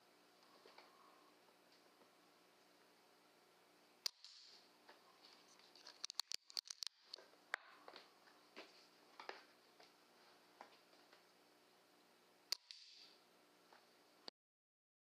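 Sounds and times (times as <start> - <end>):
clicks and taps handling gear: 5.4 - 7.2.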